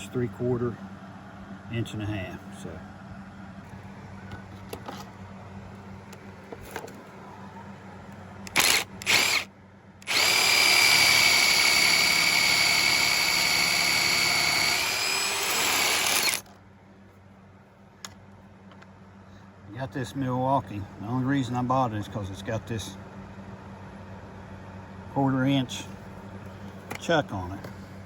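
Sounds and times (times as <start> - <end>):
cordless drill drilling wood: 8.5 - 16.4
drill trigger blips: 8.5 - 16.4.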